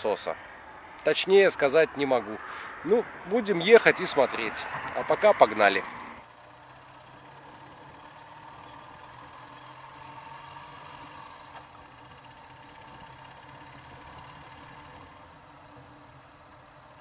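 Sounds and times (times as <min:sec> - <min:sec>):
motorcycle engine running: 0:05.8 - 0:17.0.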